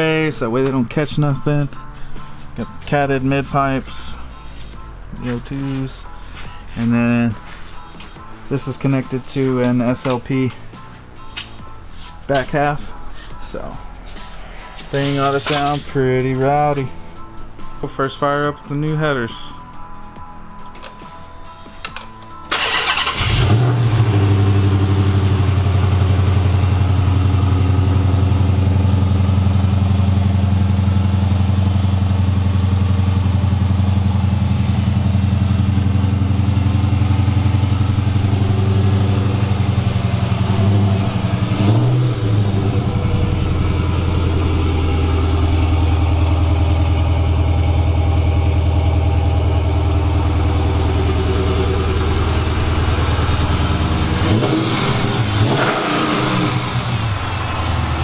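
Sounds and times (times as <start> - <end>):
car engine idling: 22.5 - 58.0
car engine starting: 22.5 - 58.0
engine revving: 22.5 - 58.0.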